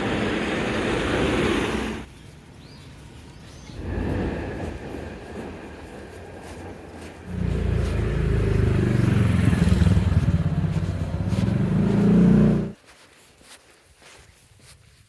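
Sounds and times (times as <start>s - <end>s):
vehicle engine running: 7.0s - 12.8s.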